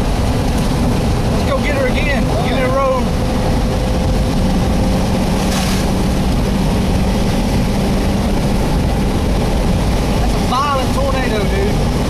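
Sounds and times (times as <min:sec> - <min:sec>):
low engine drone: 0:00.0 - 0:12.0
vehicle engine and road noise: 0:00.0 - 0:12.0
wind rushing: 0:00.0 - 0:12.0.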